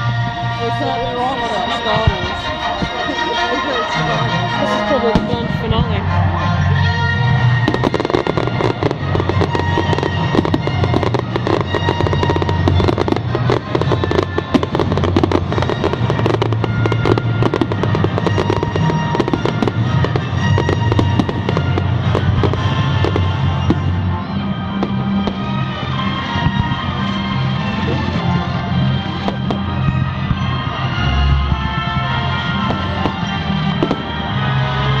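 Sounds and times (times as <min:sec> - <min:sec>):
fireworks bangs and crackles: 0:00.0 - 0:35.0
music playing: 0:00.0 - 0:35.0.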